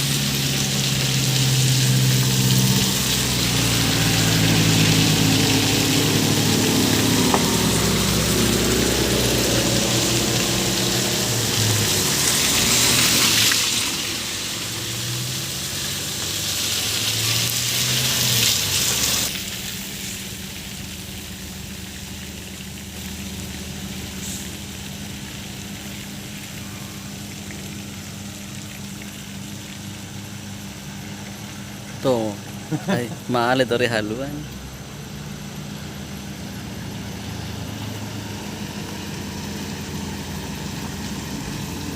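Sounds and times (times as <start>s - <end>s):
vehicle engine revving: 0.0s - 22.4s, 23.0s - 41.9s
water spray rushing: 0.0s - 41.9s
steady hum and hiss: 19.2s - 41.9s.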